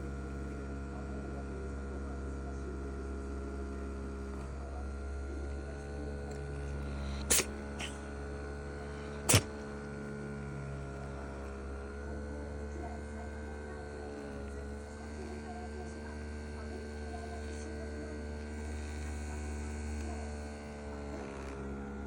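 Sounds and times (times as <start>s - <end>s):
steady electrical hum: 0.0s - 21.2s
cat sneezing: 7.0s - 8.1s, 9.2s - 9.6s.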